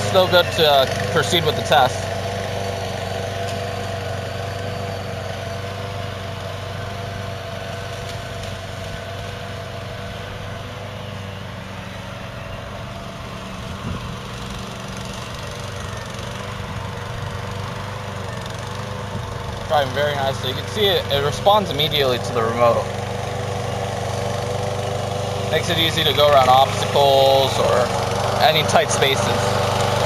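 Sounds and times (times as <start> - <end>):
mower engine humming: 0.0 - 30.0
steady whine: 0.0 - 30.0.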